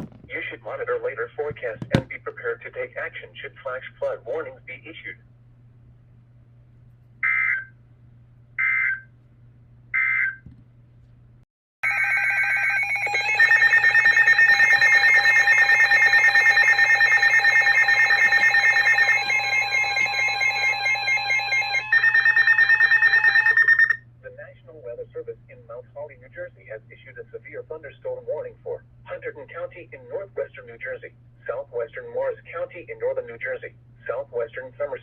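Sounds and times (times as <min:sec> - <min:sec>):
rapidly pulsing alert tone: 0:11.9 - 0:24.0.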